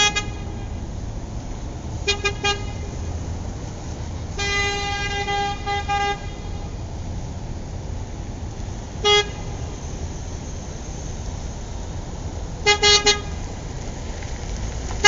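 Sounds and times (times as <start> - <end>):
car horn toots: 0.0 - 0.7, 2.0 - 3.0, 4.4 - 6.7, 9.0 - 9.4, 12.6 - 13.4.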